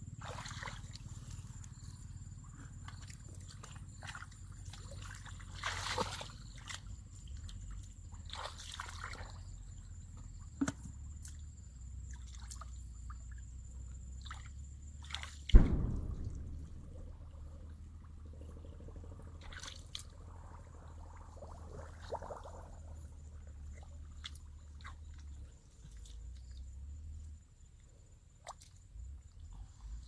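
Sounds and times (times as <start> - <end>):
water sloshing and splashing: 0.2 - 9.8, 10.4 - 26.7
loud thump: 15.5 - 17.8.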